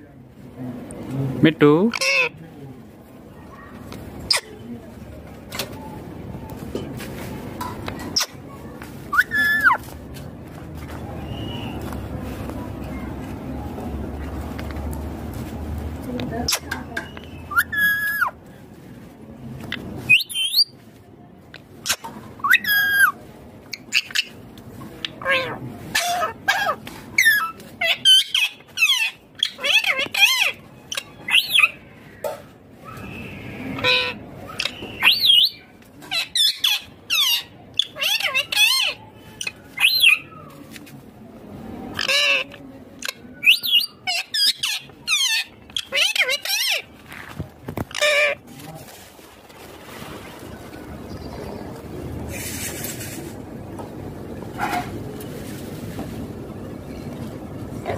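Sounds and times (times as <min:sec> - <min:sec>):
parakeet squawking: 0:01.8 - 0:02.4, 0:17.4 - 0:18.4, 0:25.2 - 0:31.8, 0:33.7 - 0:40.2, 0:42.0 - 0:46.9, 0:47.9 - 0:48.4
parakeet calling: 0:01.9 - 0:02.4, 0:16.5 - 0:18.4, 0:42.0 - 0:46.9.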